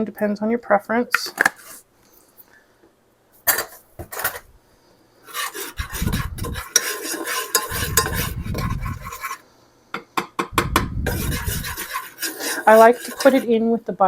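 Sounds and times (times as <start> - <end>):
utensil scraping garlic: 1.2 - 1.8, 3.5 - 4.5, 5.2 - 9.4, 10.7 - 13.6
utensils clicking and knocking: 5.3 - 9.4.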